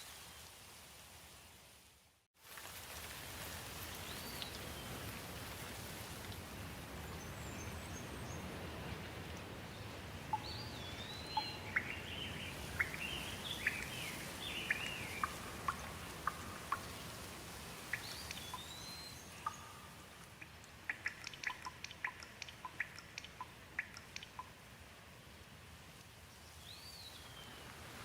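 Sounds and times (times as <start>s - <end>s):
steady rain: 0.0s - 28.0s
birds chirping: 7.1s - 24.6s
sharp ticks: 14.7s - 17.0s, 19.4s - 24.6s.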